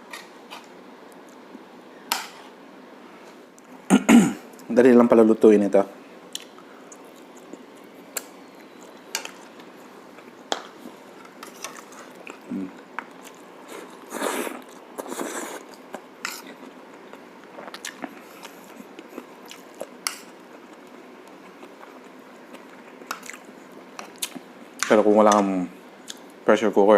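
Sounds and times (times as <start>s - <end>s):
person chewing food: 6.3s - 24.4s.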